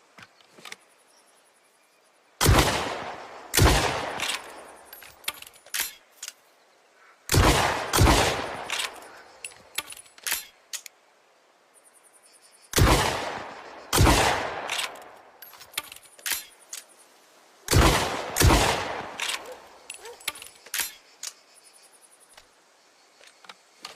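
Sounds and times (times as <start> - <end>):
shotgun blasts with echo: 2.4 - 4.8, 7.3 - 9.0, 12.7 - 15.0, 17.7 - 19.6.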